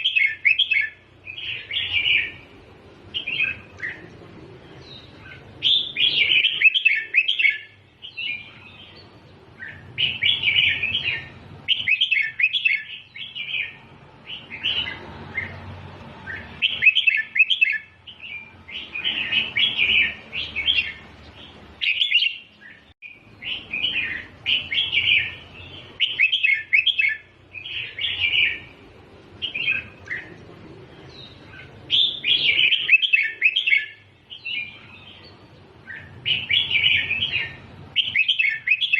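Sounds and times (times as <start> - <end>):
bird chirping song: 0.0 - 38.9.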